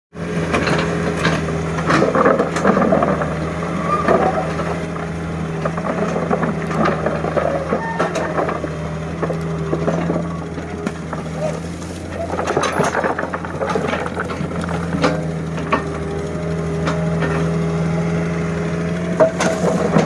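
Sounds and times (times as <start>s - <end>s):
excavator engine running: 0.2s - 20.0s
metallic clanks and knocks: 5.6s - 16.1s, 19.1s - 20.0s.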